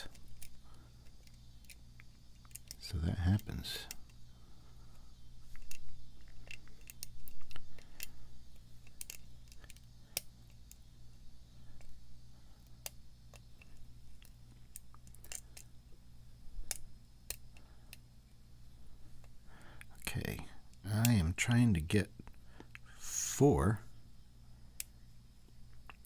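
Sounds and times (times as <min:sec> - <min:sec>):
lock pick clicking and scraping: 0:05.5 - 0:10.9, 0:12.8 - 0:15.7.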